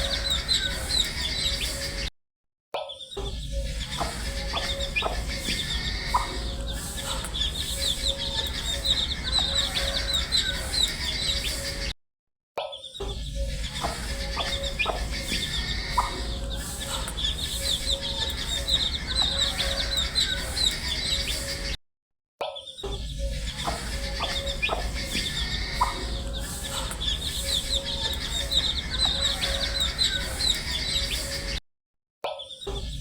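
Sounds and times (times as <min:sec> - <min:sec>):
baby chicks peeping: 0:00.0 - 0:02.1, 0:03.4 - 0:11.9, 0:13.4 - 0:21.7, 0:23.2 - 0:31.6
steady low hum: 0:03.5 - 0:11.7, 0:13.3 - 0:21.7, 0:23.2 - 0:31.5.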